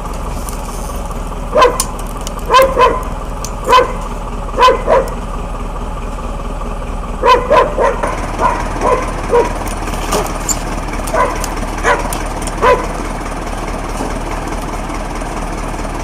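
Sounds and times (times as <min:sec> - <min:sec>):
dog barking: 0:01.5 - 0:04.0, 0:04.6 - 0:05.2, 0:07.2 - 0:10.4, 0:11.1 - 0:13.0.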